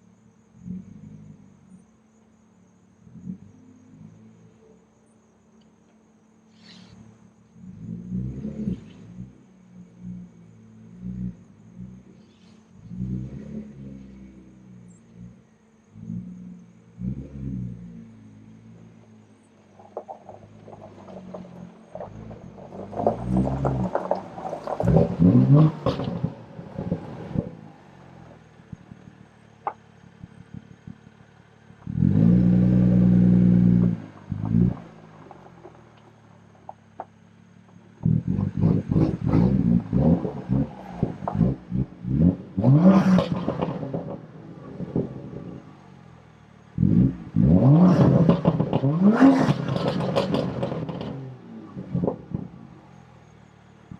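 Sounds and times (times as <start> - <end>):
car engine revving: 0.0 - 2.3, 6.6 - 53.9.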